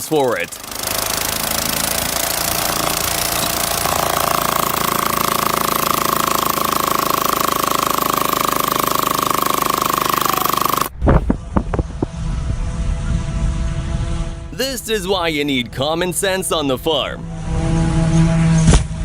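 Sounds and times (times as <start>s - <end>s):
machine clattering: 0.0s - 10.9s
steady whine: 0.0s - 18.7s.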